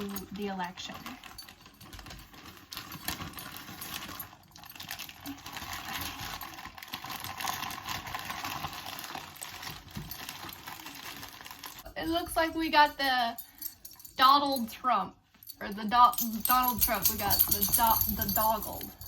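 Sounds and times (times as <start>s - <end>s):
packaging rustling and tearing: 0.8s - 11.8s.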